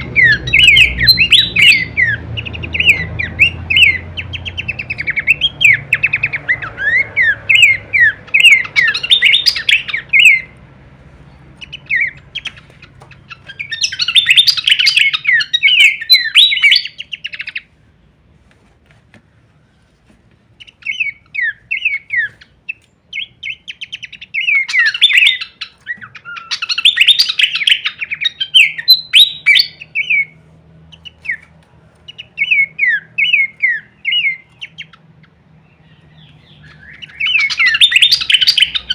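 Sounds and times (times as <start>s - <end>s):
bird singing falling notes: 0.0s - 10.6s.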